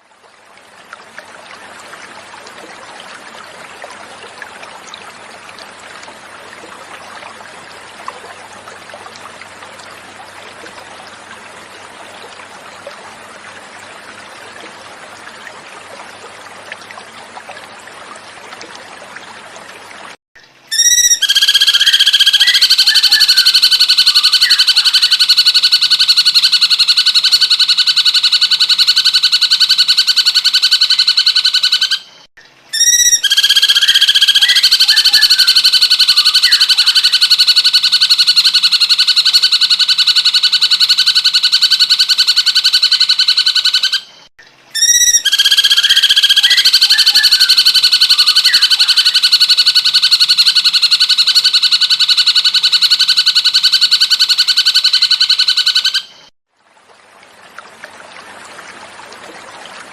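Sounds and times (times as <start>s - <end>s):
faint flowing water: 0.0s - 59.9s
bird buzzing trill call: 20.7s - 32.1s, 32.7s - 44.1s, 44.8s - 56.2s.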